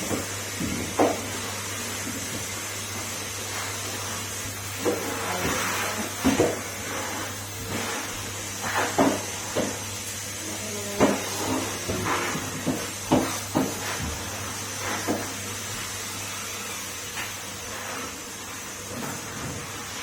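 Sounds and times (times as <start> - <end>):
floor tool knocking on hard floor: 0.0 - 1.3, 6.2 - 6.6, 11.0 - 14.3
vacuum cleaner running: 0.0 - 20.0.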